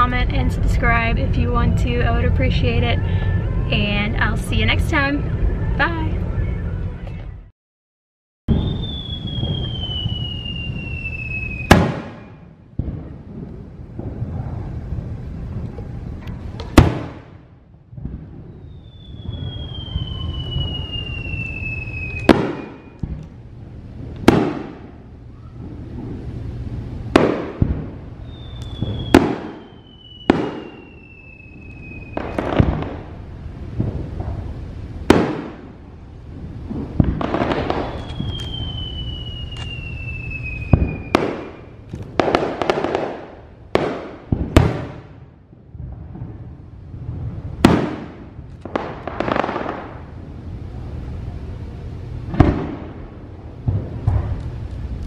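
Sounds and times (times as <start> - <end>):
falling firework whistle: 8.5 - 12.6, 18.0 - 23.2, 24.3 - 26.3, 27.2 - 33.0, 36.8 - 45.1
firework shells bursting: 8.5 - 14.4, 15.6 - 23.4, 27.0 - 33.2, 36.6 - 45.2, 47.6 - 50.1.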